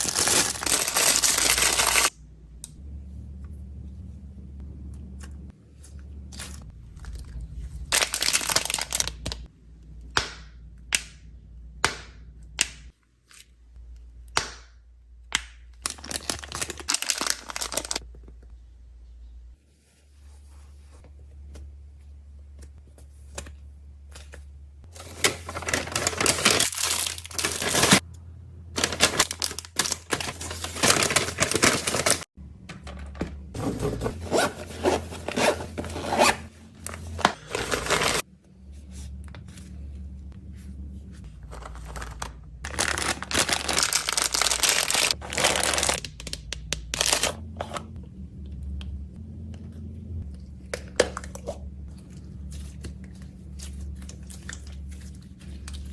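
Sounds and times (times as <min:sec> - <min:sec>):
plastic wrappers crinkling: 0:00.0 - 0:02.1, 0:07.0 - 0:09.5, 0:15.8 - 0:18.0, 0:24.9 - 0:28.0, 0:28.8 - 0:32.3, 0:33.8 - 0:38.2, 0:41.4 - 0:47.4
steady low hum: 0:02.1 - 0:08.0, 0:27.1 - 0:43.8, 0:46.0 - 0:55.9.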